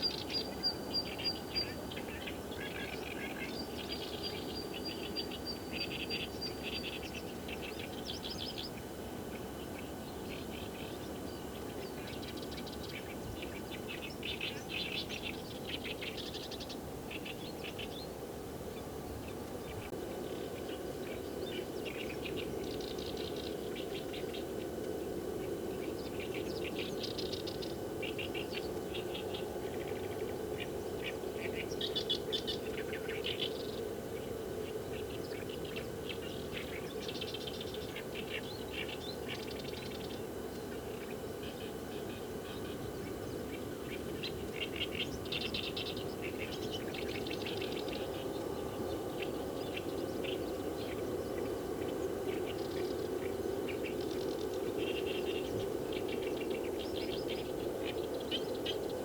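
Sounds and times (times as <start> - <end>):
wild birds chirping: 25.7 - 59.0.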